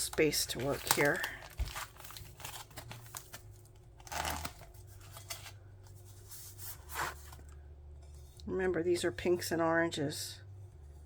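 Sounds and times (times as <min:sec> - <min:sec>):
packing material rustling: 0:00.0 - 0:07.4.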